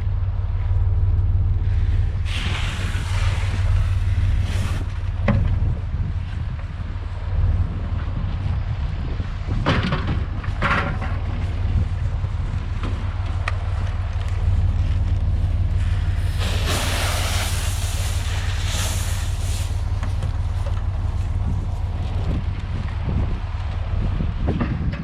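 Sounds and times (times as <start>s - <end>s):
tractor engine running: 0.0s - 25.0s
hissing rush of noise: 1.6s - 5.2s, 15.4s - 22.5s.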